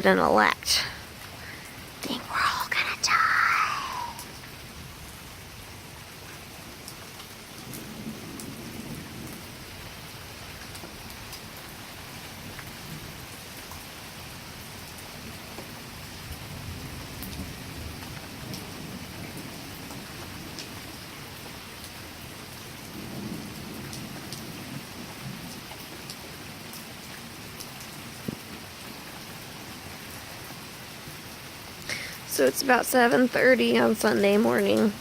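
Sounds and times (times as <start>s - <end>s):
rain pattering: 0.0s - 35.0s
distant thunder rumbling: 7.6s - 11.2s, 16.3s - 25.9s.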